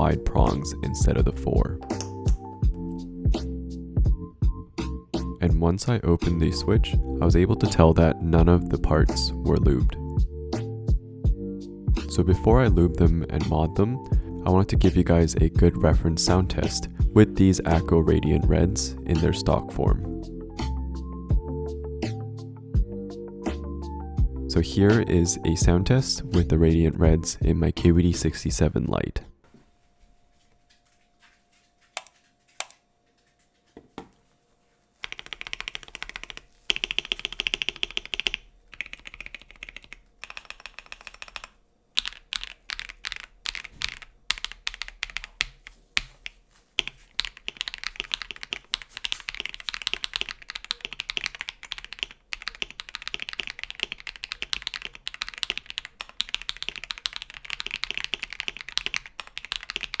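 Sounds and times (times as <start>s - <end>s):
typing on mechanical keyboard: 35.0s - 60.0s.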